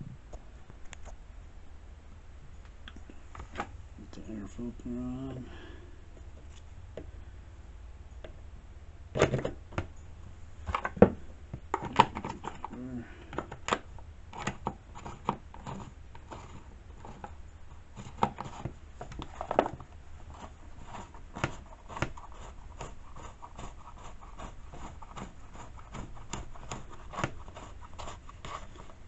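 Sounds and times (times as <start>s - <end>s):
plastic parts clicking and rubbing: 10.6s - 29.0s.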